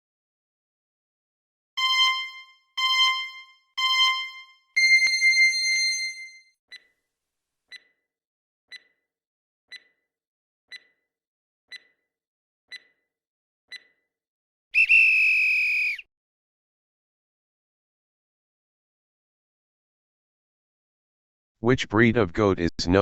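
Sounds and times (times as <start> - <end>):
high electronic tone: 1.8 - 6.4
soft timer ticks: 6.7 - 7.0, 7.7 - 8.0, 8.7 - 9.1, 9.7 - 10.1, 10.7 - 11.1, 11.7 - 12.1, 12.7 - 13.1, 13.7 - 14.0.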